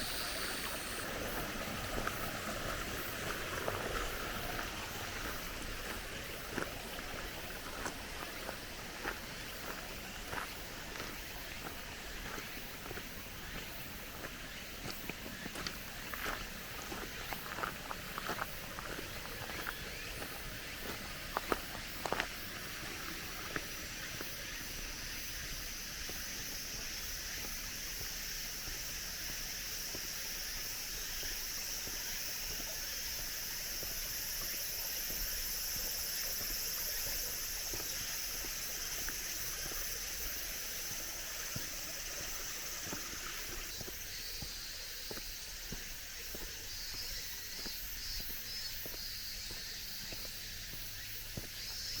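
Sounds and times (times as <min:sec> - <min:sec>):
cicadas shrilling: 0:00.0 - 0:52.0
pulsing cicada call: 0:00.0 - 0:52.0
footsteps on gravel: 0:01.2 - 0:24.3, 0:40.9 - 0:51.9.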